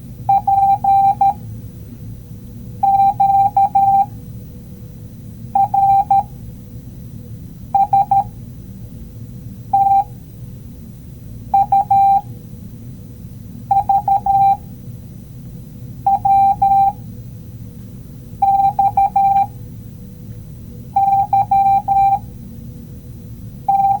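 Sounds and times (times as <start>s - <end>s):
low steady background noise: 0.0s - 24.0s
morse code beeps: 0.3s - 1.4s, 2.8s - 4.2s, 5.6s - 6.3s, 7.8s - 8.3s, 9.8s - 10.1s, 11.6s - 12.3s, 13.7s - 14.6s, 16.1s - 17.0s, 18.4s - 19.6s, 21.0s - 22.3s, 23.7s - 24.0s.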